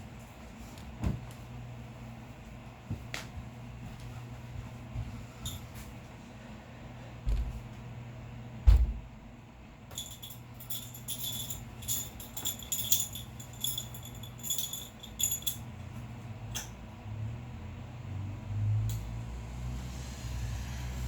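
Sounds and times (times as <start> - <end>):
low steady hum: 0.0 - 21.0
heavy thud: 8.6 - 9.1
metallic jingling and clinking: 9.9 - 15.8.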